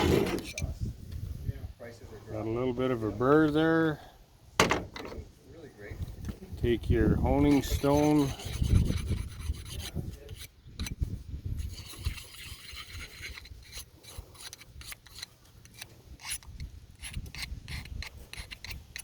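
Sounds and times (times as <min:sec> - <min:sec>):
honing stone scraping knife: 0:00.0 - 0:00.7, 0:07.3 - 0:19.0.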